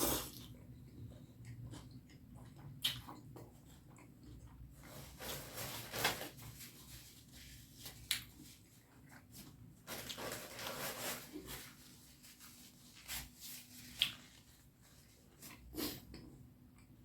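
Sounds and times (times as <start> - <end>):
wet chewing: 0.0 - 4.8, 13.9 - 14.4.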